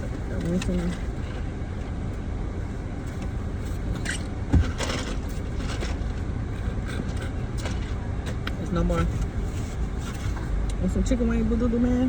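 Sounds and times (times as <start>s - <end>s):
car cabin engine rumble: 0.0s - 12.0s
food rustling and scraping: 3.6s - 8.0s.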